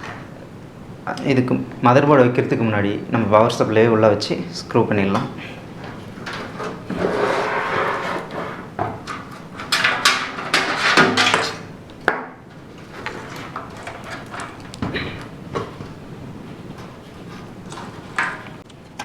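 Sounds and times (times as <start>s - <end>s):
power supply knocking and scraping: 5.1s - 16.0s.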